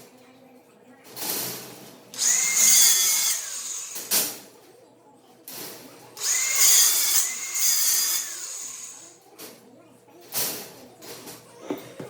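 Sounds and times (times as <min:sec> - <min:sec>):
power tool motor whine: 0:02.2 - 0:04.0, 0:06.2 - 0:09.0.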